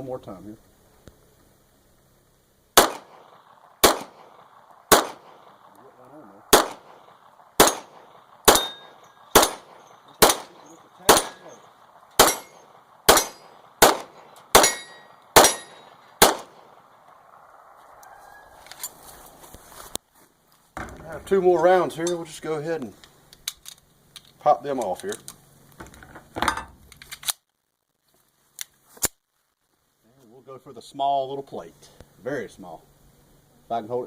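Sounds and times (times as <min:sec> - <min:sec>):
pistol shots: 0:02.8 - 0:17.4
steel target plates ringing: 0:08.5 - 0:13.6, 0:14.6 - 0:16.0.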